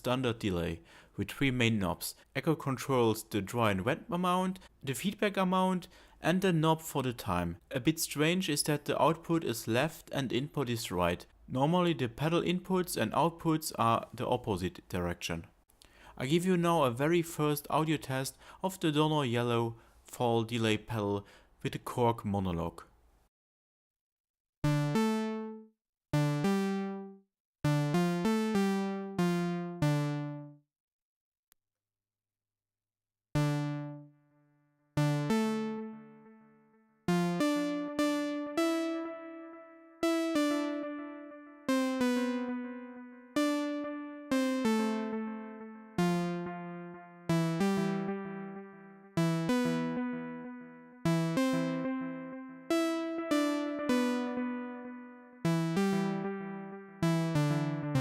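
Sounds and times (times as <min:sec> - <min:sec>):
synthesizer plucked notes with echo: 0:24.6 - 0:30.6, 0:33.4 - 0:34.3, 0:35.0 - 0:58.0.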